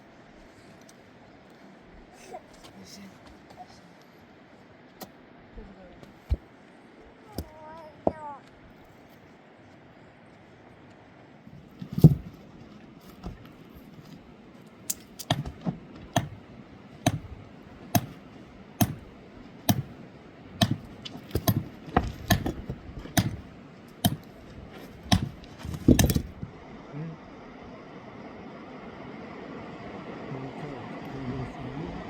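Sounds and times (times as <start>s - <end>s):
heavy thud: 11.8s - 12.4s, 15.3s - 16.4s, 17.0s - 18.2s, 18.8s - 19.1s, 19.7s - 20.0s, 20.6s - 26.4s
hand tool knocking: 14.9s - 16.4s, 17.0s - 18.2s, 18.8s - 19.1s, 19.7s - 20.0s, 20.6s - 26.3s.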